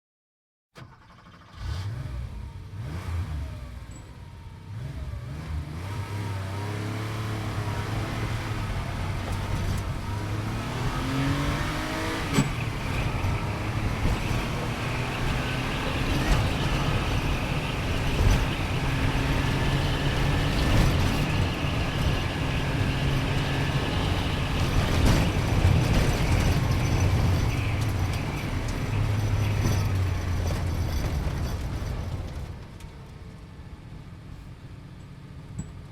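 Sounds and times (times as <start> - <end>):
road noise: 0.8 - 35.9
sports car engine: 0.8 - 35.9.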